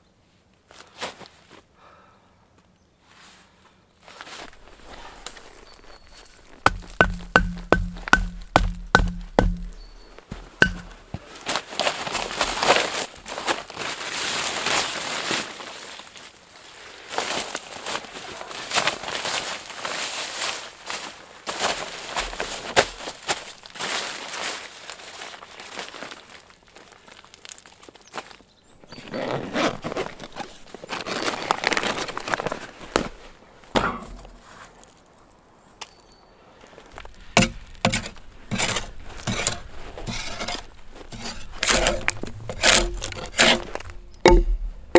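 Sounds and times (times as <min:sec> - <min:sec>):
crunching and rustling: 0:04.3 - 0:14.0, 0:29.3 - 0:33.4, 0:36.9 - 0:44.9
rough rasping noise: 0:04.6 - 0:11.2, 0:37.0 - 0:44.9
axe chopping wood: 0:04.6 - 0:11.3, 0:37.0 - 0:44.9
sharp knocks: 0:06.1 - 0:11.2, 0:37.0 - 0:44.9.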